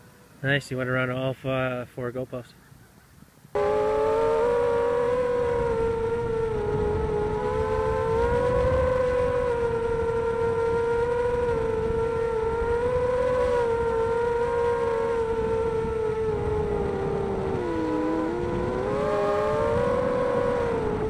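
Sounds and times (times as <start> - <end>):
quadcopter motors whining: 3.6 - 21.0.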